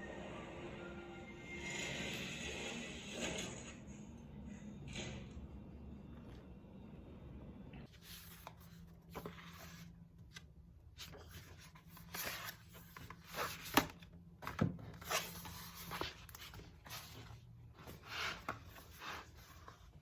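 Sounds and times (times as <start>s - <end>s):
paper rustling and scratching: 7.9s - 20.0s.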